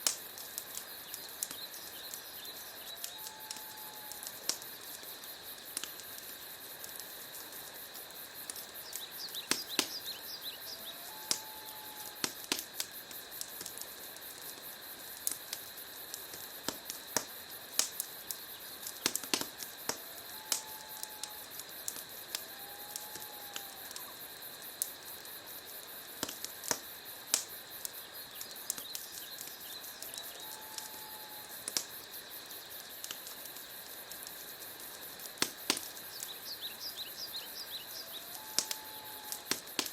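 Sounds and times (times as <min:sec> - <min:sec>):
logs crackling in a fireplace: 0:00.0 - 0:39.9
faint whistles: 0:08.9 - 0:12.2, 0:28.3 - 0:31.6, 0:36.1 - 0:39.5.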